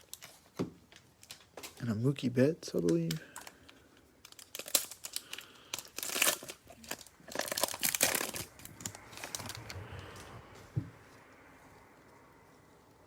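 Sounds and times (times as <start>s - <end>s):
cellophane wrapper crinkling: 0.0s - 1.9s, 2.8s - 9.8s.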